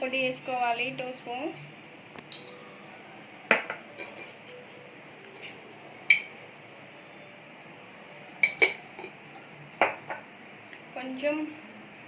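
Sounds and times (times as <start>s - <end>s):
spoon clinking against a dish: 2.3s - 2.6s, 6.1s - 6.5s, 8.4s - 9.2s.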